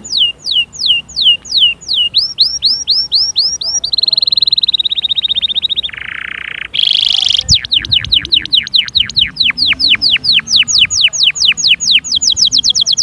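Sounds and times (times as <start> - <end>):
small songbird singing: 0.0 - 13.0.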